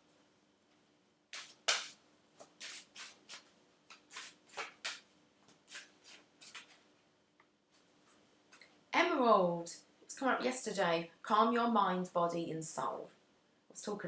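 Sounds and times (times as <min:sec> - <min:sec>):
cards being shuffled: 0:01.4 - 0:06.8.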